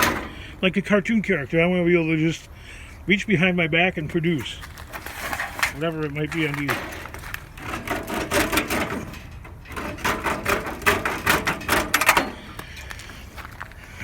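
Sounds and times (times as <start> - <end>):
hand tool clicking and scraping metal: 4.8 - 13.0.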